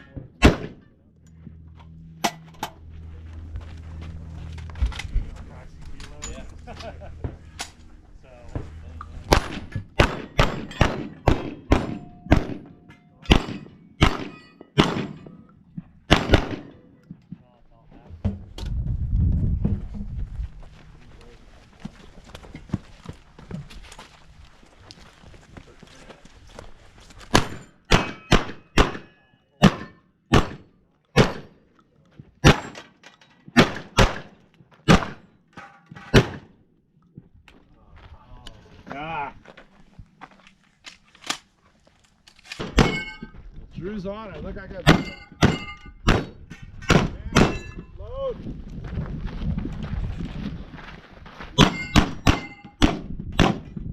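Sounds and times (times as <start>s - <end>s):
shotgun shots: 0.4s - 0.8s, 9.3s - 15.3s, 16.1s - 16.8s, 27.3s - 31.6s, 32.4s - 32.8s, 33.6s - 35.3s, 36.0s - 36.5s, 44.8s - 47.7s, 51.6s - 53.7s.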